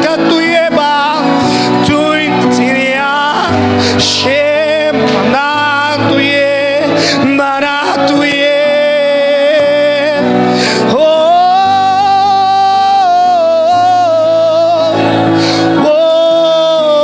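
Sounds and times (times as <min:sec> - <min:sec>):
person singing long notes: 0:00.0 - 0:17.0
sustained instrumental chords: 0:00.0 - 0:17.0.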